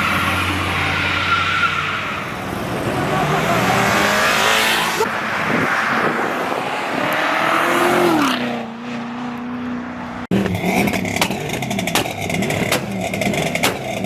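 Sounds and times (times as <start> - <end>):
sports car engine droning: 9.3 - 14.0
car engine crackles and pops: 10.3 - 14.0.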